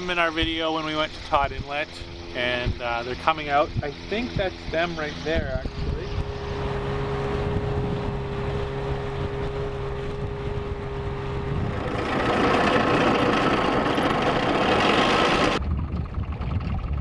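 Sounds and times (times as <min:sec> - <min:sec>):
boat engine humming: 0:06.2 - 0:15.6
loud rushing noise: 0:11.5 - 0:15.6.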